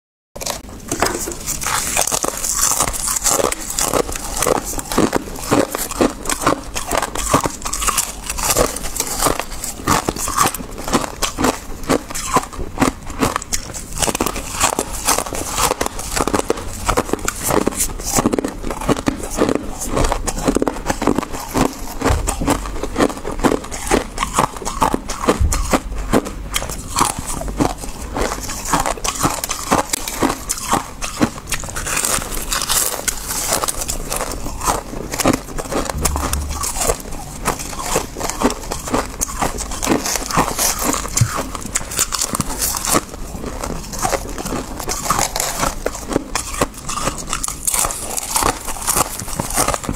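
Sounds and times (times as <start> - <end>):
icy crunches of chewing frost: 1.4 - 12.4, 13.2 - 36.5.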